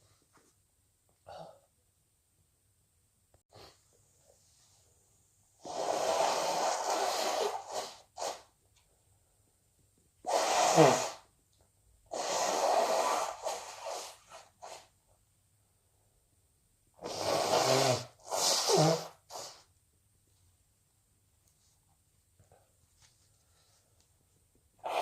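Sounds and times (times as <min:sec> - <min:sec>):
person blowing nose: 0:05.6 - 0:08.5, 0:10.2 - 0:11.3, 0:12.1 - 0:14.9, 0:17.0 - 0:19.7, 0:24.8 - 0:25.0
person sneezing: 0:10.3 - 0:11.2, 0:17.0 - 0:19.7.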